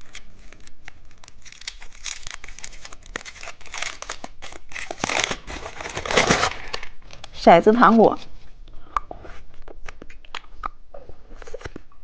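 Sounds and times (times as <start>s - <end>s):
plastic wrapper crinkling: 0.0s - 8.4s.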